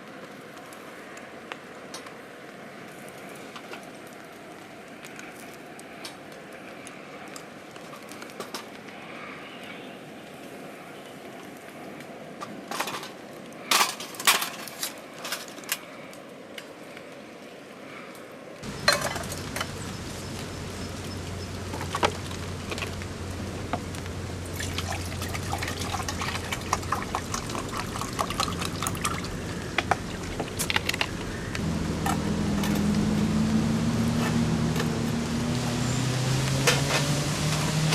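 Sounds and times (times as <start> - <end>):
rain: 0.0 - 37.9
dripping water: 18.6 - 33.2
dense ticking and crackling: 18.6 - 35.7
low steady hum: 18.6 - 37.7.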